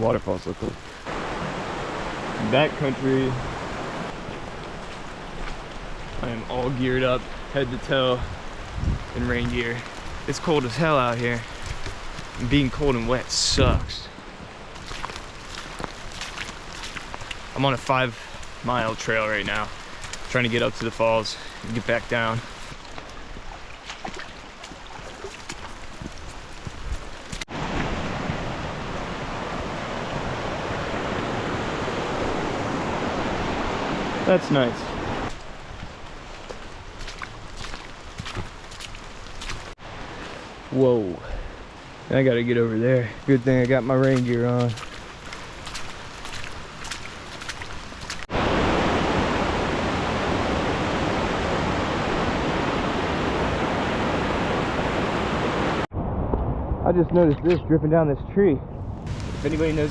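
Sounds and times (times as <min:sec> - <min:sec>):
waterfall roaring: 0:00.0 - 0:08.6, 0:27.5 - 0:35.4, 0:48.3 - 0:55.9
cascade of falling water: 0:00.0 - 0:26.4, 0:27.1 - 0:35.8, 0:36.4 - 0:57.6, 0:59.1 - 0:59.9
rain tapping: 0:04.0 - 0:27.5, 0:34.4 - 0:39.8, 0:41.7 - 0:48.3, 0:59.1 - 0:59.9.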